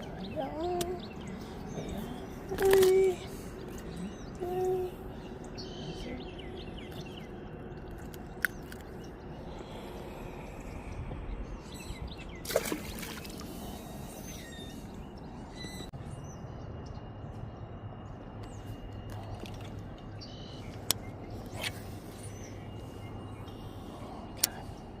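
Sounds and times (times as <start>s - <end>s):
low steady hum: 0.0s - 25.0s
water sounds: 12.4s - 15.0s.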